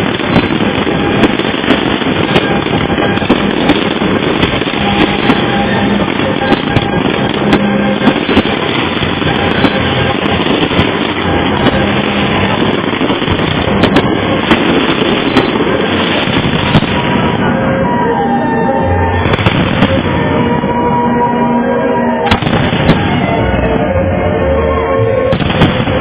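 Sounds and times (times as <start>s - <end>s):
fireworks barrage: 0.0s - 24.5s, 25.2s - 26.0s.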